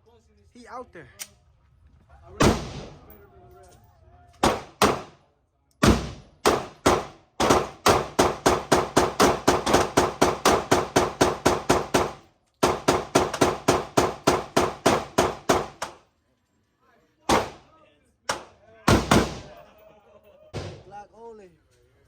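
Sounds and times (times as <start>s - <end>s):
rapid gunfire: 4.4s - 5.2s, 5.8s - 15.9s, 17.3s - 17.6s, 18.3s - 19.6s.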